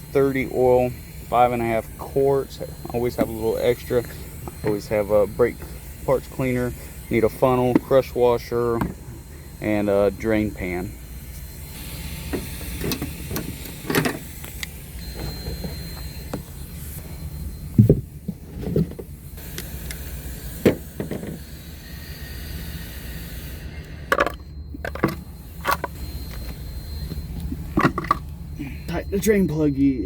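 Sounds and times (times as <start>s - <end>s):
steady low hum: 0.0s - 30.0s
hand tools clicking and knocking: 27.5s - 28.2s.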